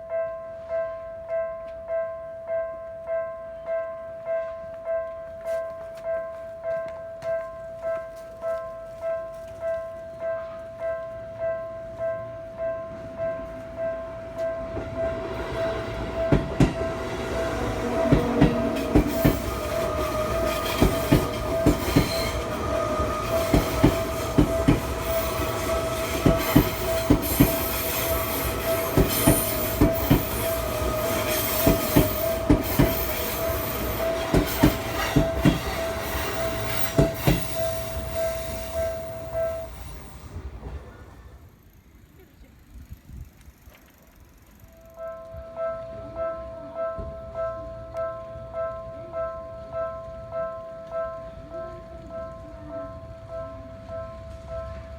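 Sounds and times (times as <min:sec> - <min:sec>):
crossing warning bell ringing: 0:00.0 - 0:40.8, 0:44.5 - 0:54.9
train wheels clacking over rail joints: 0:15.9 - 0:41.4.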